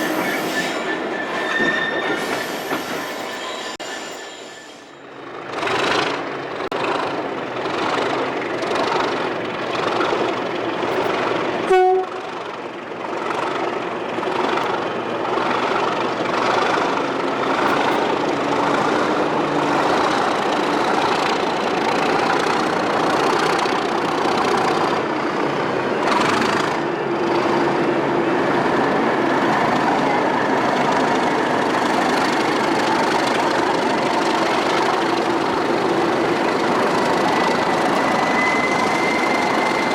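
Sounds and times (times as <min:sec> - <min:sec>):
train horn blast: 0:11.7 - 0:12.3
locomotive engine running: 0:27.1 - 0:39.9.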